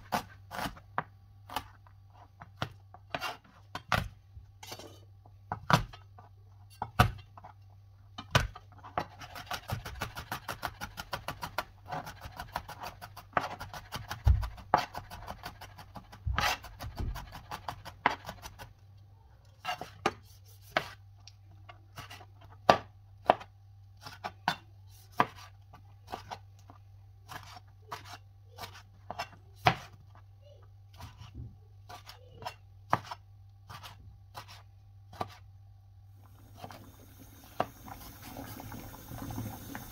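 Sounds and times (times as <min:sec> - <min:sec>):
knife chopping on cutting board: 0:08.2 - 0:18.7, 0:19.6 - 0:21.0, 0:22.0 - 0:26.4, 0:27.3 - 0:30.0, 0:31.0 - 0:35.4.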